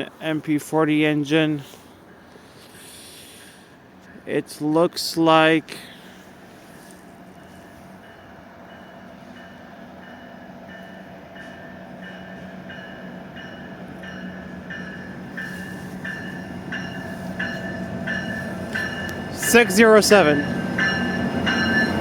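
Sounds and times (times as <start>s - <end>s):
diesel locomotive engine drone: 0.0s - 22.0s
locomotive bell ringing: 7.3s - 22.0s.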